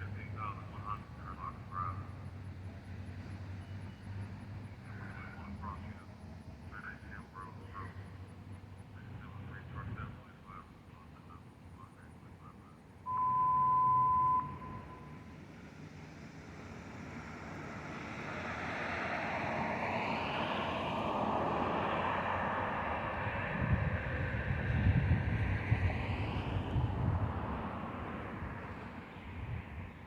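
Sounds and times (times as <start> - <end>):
road traffic rushing: 0.0 - 30.0
censor bleep: 13.1 - 15.3.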